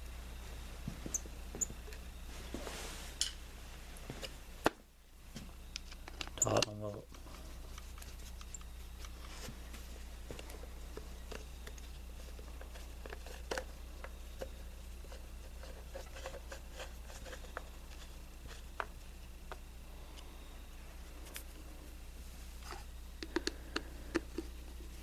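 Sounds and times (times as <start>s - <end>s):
steady low hum: 0.0s - 25.0s
hand tools clicking and tapping: 23.2s - 24.5s.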